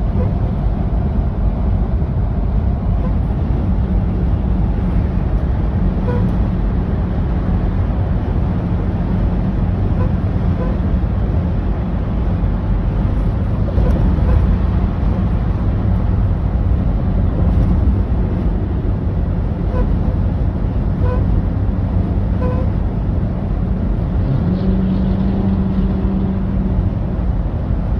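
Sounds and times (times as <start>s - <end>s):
loud steady low rumble: 0.0s - 27.9s
long low honk: 4.3s - 6.5s, 9.8s - 11.0s, 13.6s - 15.7s, 19.6s - 23.0s
high squeaky toots: 22.4s - 22.8s.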